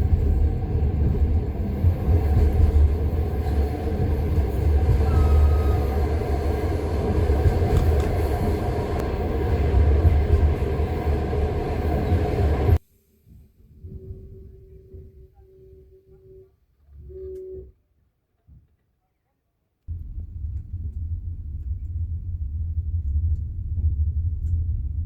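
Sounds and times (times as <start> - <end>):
train wheels knocking on rail joints: 0.0 - 9.2
train rumble: 0.0 - 12.8, 19.9 - 25.0.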